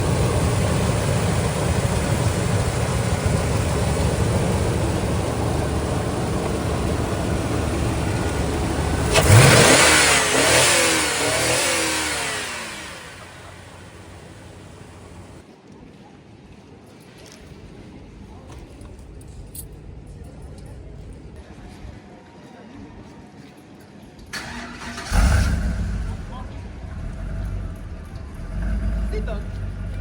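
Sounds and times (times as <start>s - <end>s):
engine rumbling: 0.0s - 15.4s, 24.4s - 30.0s
vehicle passing by: 2.8s - 15.4s.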